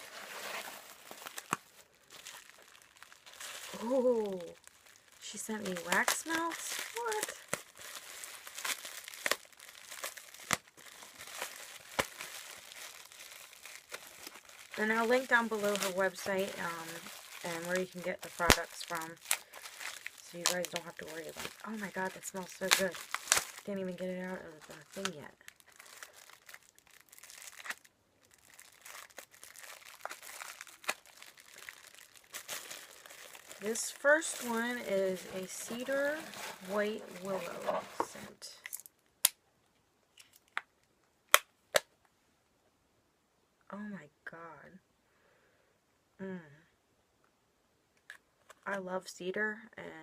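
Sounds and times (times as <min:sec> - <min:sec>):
packaging crinkling: 0:00.0 - 0:38.9.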